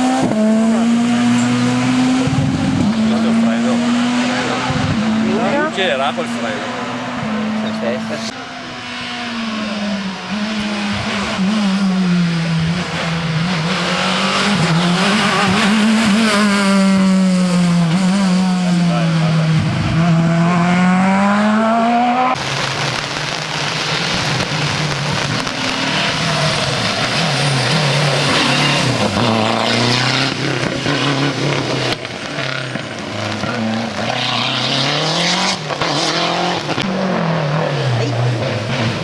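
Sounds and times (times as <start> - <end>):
rally car engine racing: 0.0 - 39.0
tyre squeal: 26.0 - 29.4.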